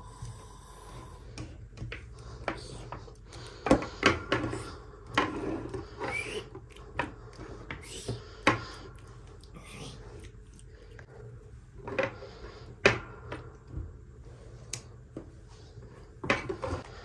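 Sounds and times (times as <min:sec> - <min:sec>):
short rising squeak: 0:06.0 - 0:06.5.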